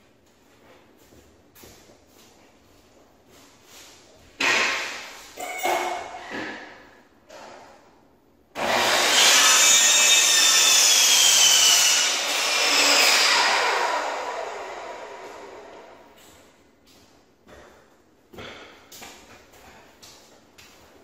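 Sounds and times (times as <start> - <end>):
chop saw cutting wood: 8.6 - 15.9.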